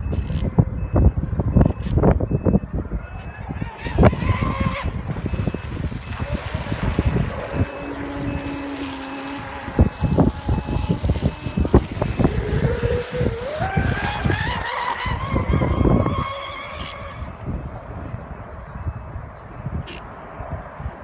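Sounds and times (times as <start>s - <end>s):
electric motor whining: 3.1s - 17.5s.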